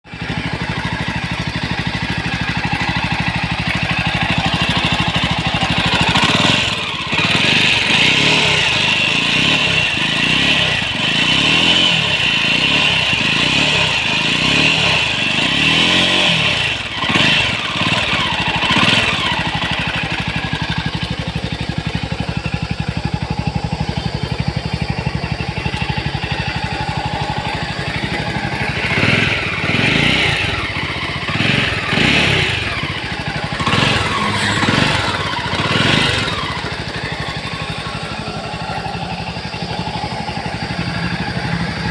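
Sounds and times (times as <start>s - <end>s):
motorcycle engine revving and idling: 0.0s - 41.9s.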